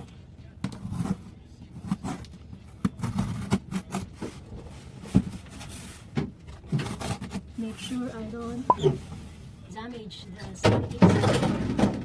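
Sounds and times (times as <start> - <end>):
knocks and scrapes on box: 2.8 - 4.4, 5.0 - 7.5.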